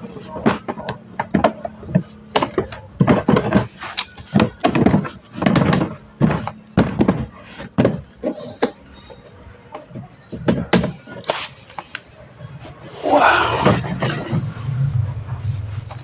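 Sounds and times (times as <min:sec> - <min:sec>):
machine parts knocking and scraping: 0:13.3 - 0:16.0.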